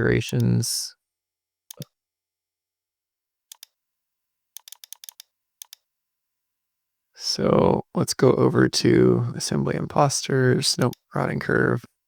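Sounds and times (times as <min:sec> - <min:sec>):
mouse and keyboard clicks: 0:04.6 - 0:05.8.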